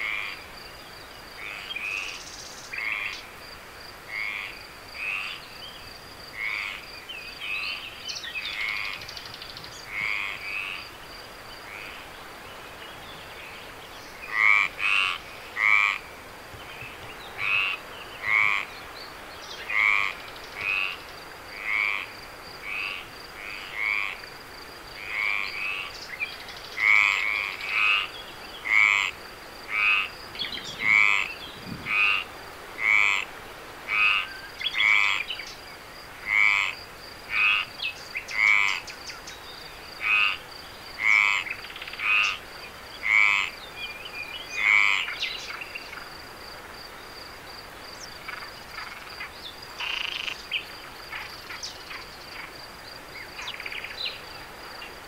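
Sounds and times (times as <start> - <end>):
frog croaking: 0.0 - 0.6, 1.3 - 3.3, 4.1 - 5.4, 6.2 - 7.8, 8.4 - 9.1, 9.9 - 11.0, 11.6 - 12.0, 14.2 - 16.1, 17.4 - 18.8, 19.6 - 24.3, 24.9 - 26.0, 26.8 - 35.4, 36.2 - 39.0, 39.9 - 43.6, 44.5 - 46.1, 47.9 - 52.6
faint high insect trill: 0.0 - 55.0.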